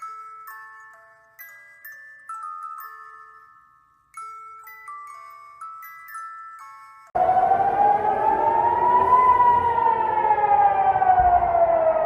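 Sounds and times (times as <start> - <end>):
civil defence siren wailing: 7.2 - 12.0.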